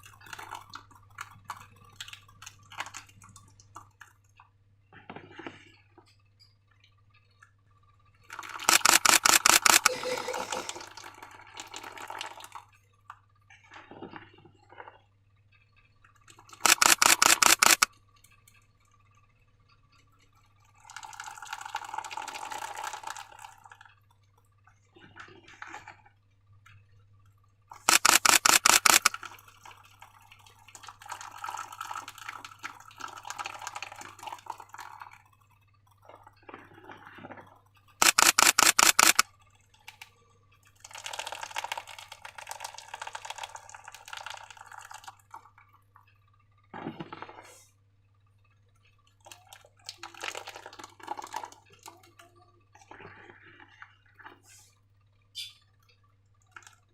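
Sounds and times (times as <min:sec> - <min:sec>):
slime squelching and dripping: 0:00.0 - 0:06.2, 0:20.2 - 0:47.7, 0:48.7 - 0:54.7.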